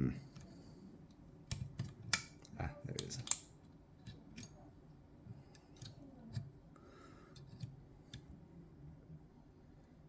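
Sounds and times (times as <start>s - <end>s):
faint metal clicks in a lock: 5.5s - 6.5s.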